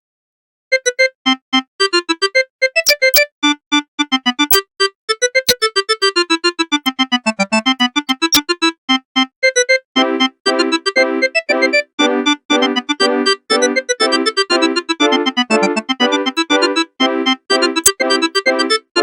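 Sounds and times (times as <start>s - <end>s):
phone ringtone beeping melody: 2.8s - 3.3s
sharp clicks: 2.9s - 3.2s.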